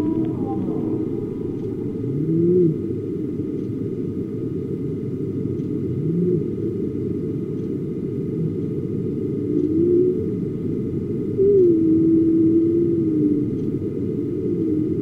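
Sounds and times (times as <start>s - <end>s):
whale-like call: 0.0s - 3.3s, 9.4s - 10.4s, 11.3s - 13.7s, 14.3s - 15.0s
deep ocean ambient rumble: 0.0s - 15.0s.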